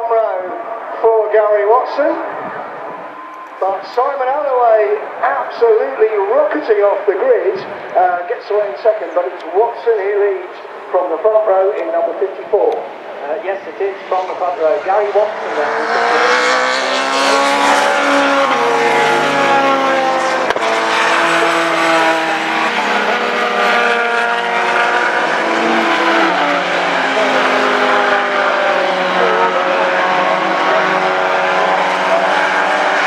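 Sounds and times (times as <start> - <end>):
race car engines revving: 0.0 - 33.0.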